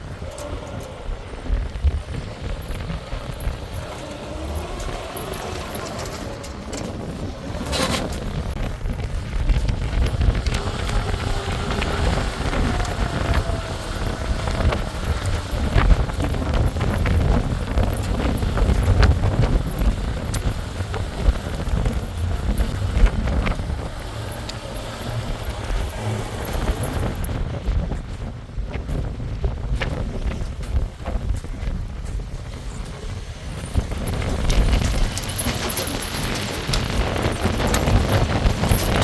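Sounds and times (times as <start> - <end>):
wind buffeting microphone: 0.0 - 39.0
scattered clicks: 33.6 - 39.0.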